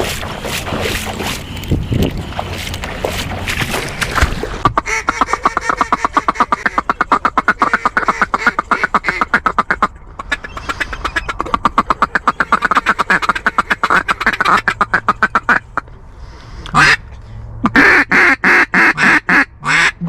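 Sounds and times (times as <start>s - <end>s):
duck quacks: 4.6s - 15.6s, 16.7s - 17.0s, 17.6s - 20.0s.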